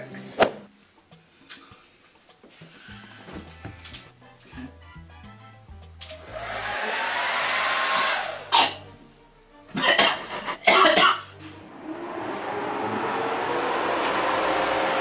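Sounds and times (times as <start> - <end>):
hair dryer motor whine: 6.2 - 8.5, 11.7 - 15.0
loud sudden bursts: 6.3 - 8.6.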